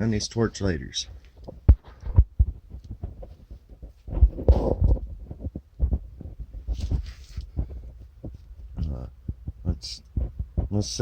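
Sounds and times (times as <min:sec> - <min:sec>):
rustling: 0:01.0 - 0:09.6
dull low thumps: 0:01.1 - 0:11.0.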